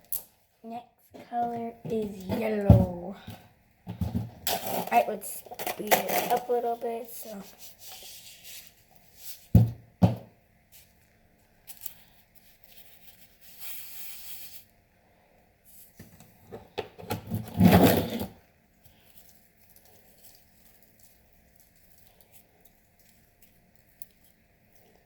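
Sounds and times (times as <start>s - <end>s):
scraping rustle: 4.4s - 9.5s.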